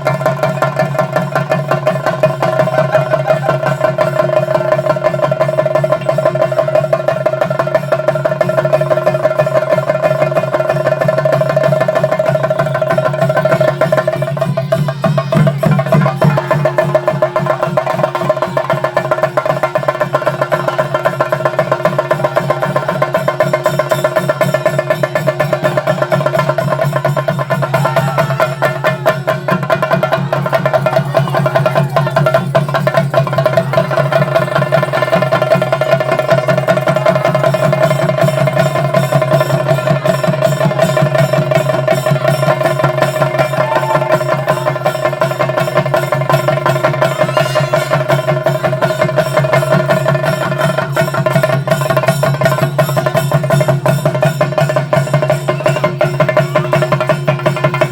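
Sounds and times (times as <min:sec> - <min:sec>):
fast dense drumming: 0:00.0 - 0:57.9
steady held tone: 0:46.9 - 0:48.8.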